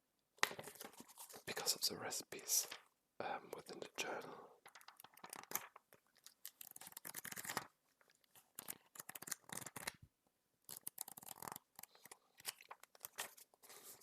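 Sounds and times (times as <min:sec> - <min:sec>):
paper pages rustling: 0:00.4 - 0:01.7, 0:04.6 - 0:10.0, 0:10.7 - 0:14.0.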